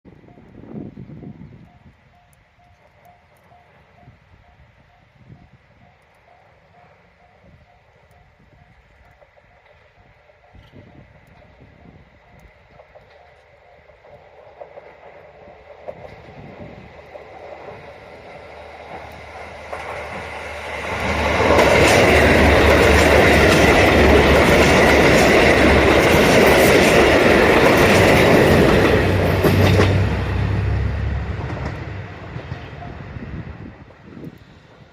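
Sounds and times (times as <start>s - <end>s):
diesel train engine drone: 0.2s - 34.9s
train wheels clicking over rail joints: 8.7s - 33.0s.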